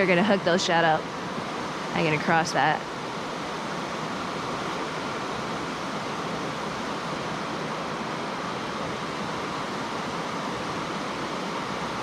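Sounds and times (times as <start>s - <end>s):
river water rushing: 0.0s - 12.0s.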